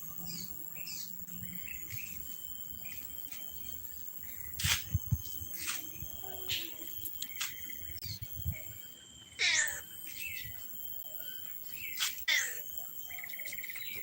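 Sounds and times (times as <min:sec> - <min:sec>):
insects chirring: 0:00.0 - 0:14.0
scuffling and rustling: 0:04.4 - 0:07.9.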